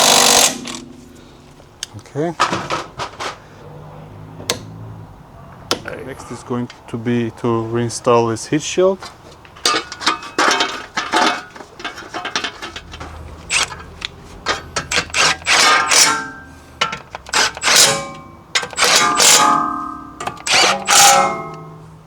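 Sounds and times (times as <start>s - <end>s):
ratchet clicking: 0.0s - 0.9s, 17.1s - 19.7s, 20.4s - 21.7s.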